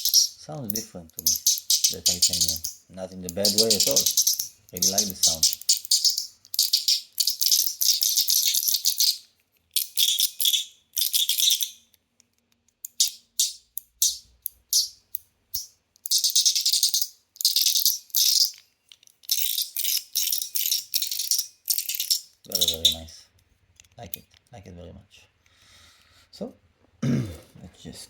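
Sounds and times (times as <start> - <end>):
fidget slider clicking and rattling: 0.0 - 23.0.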